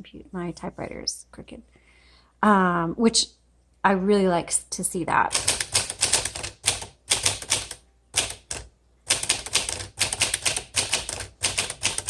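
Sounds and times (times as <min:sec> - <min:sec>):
manual typewriter typing: 0:05.3 - 0:12.0.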